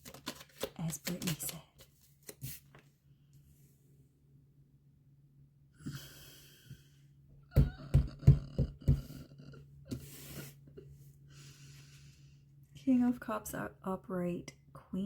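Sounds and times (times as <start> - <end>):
cards rustling: 0.0 - 2.9
faint steady hum: 0.0 - 15.0.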